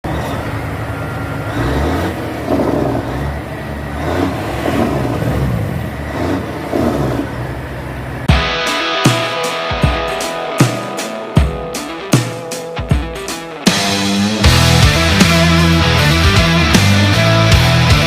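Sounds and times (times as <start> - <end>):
car engine revving: 0.0 - 18.0
music with guitar and drums: 8.3 - 18.0.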